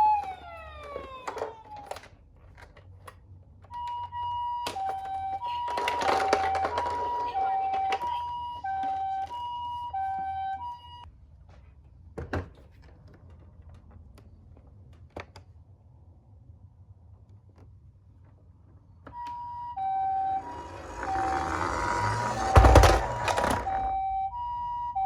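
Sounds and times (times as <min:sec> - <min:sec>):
toy two-tone siren: 0:00.0 - 0:02.0, 0:03.6 - 0:11.1, 0:19.1 - 0:25.0.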